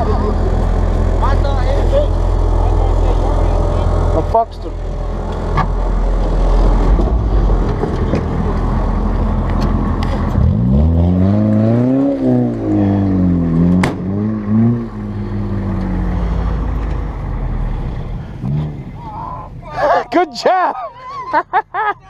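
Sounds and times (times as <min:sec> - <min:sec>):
car engine revving: 0:00.0 - 0:19.1
sharp knock: 0:13.8 - 0:14.1.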